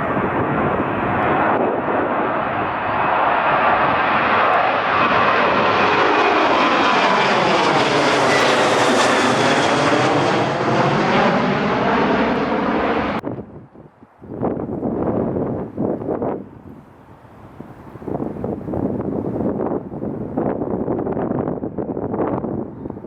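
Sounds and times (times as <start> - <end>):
airliner passing by: 0.0 - 13.5.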